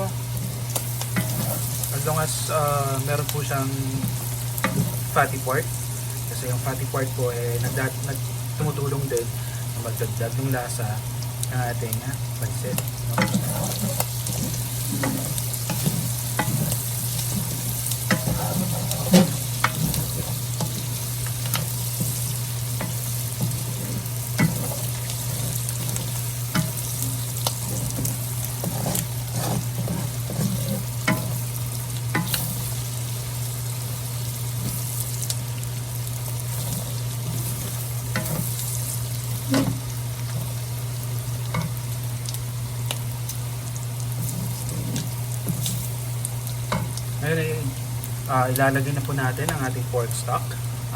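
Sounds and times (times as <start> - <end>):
food sizzling in a frying pan: 0.0 - 50.9
spatula scraping a pan: 0.4 - 2.1, 12.6 - 32.9, 36.3 - 40.6, 44.1 - 45.9.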